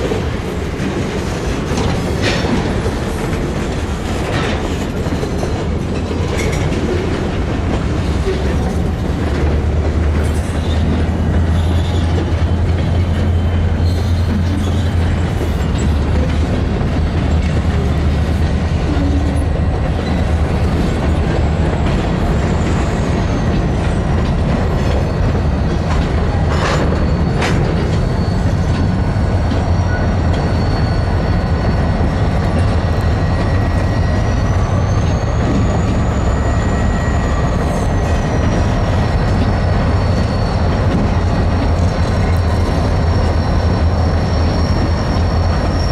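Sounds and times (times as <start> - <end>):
freight train rumble: 0.0 - 45.9
high wheel squeal: 10.3 - 16.5, 17.4 - 45.9.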